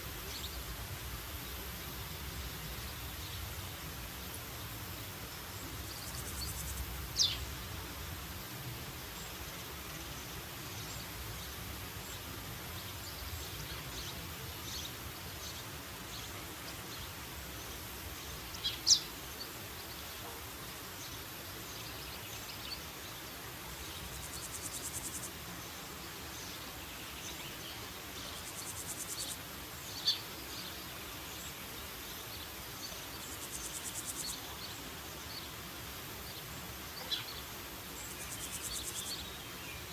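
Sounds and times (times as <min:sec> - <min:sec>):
background hiss: 0:00.0 - 0:39.9
high-pitched insect trills: 0:24.1 - 0:25.4, 0:28.4 - 0:29.5, 0:38.1 - 0:39.2.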